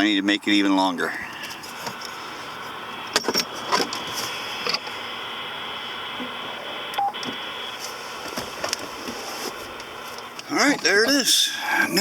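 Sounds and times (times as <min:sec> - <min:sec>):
radio static hiss: 0:00.0 - 0:12.0
radio clicks: 0:01.3 - 0:10.9.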